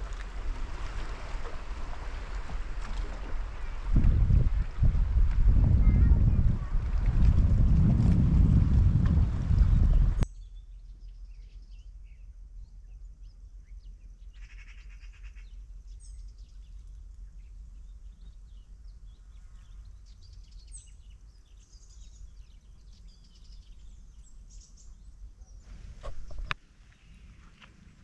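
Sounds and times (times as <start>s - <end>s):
steady low rumble: 0.0s - 26.6s
birds chirping: 9.6s - 27.5s
buzzy pulsing bird call: 14.3s - 15.6s.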